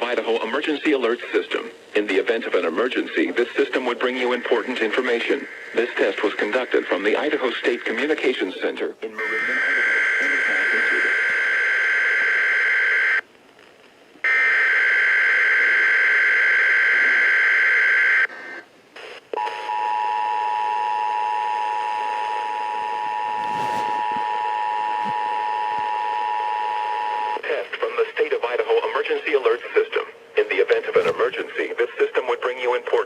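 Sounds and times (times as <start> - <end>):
two-tone alert signal: 9.2 - 12.0.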